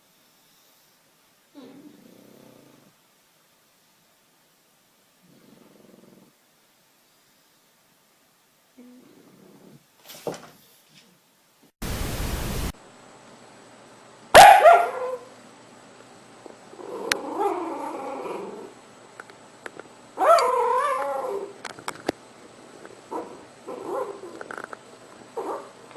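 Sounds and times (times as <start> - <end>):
burst of hiss: 11.8 - 12.8
dog yelping and whining in sleep: 14.4 - 15.3, 16.8 - 18.7, 20.2 - 21.6, 23.1 - 24.5, 25.4 - 25.8.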